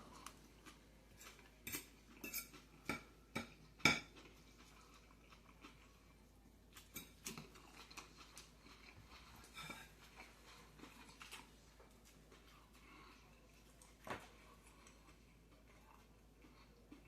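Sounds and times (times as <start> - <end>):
utensils clinking against a dish: 1.2 - 4.2, 6.9 - 8.0, 9.4 - 10.0.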